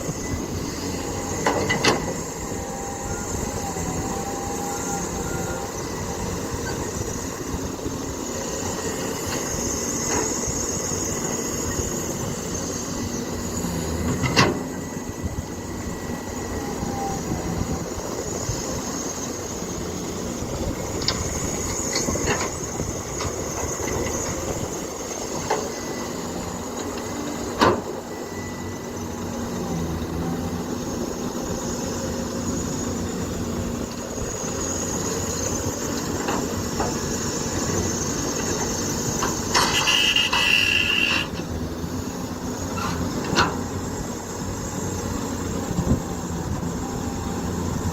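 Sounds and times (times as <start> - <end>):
high metallic squeals: 0.0 - 7.6, 28.1 - 29.9, 37.1 - 41.6
excavator engine running: 0.0 - 47.9.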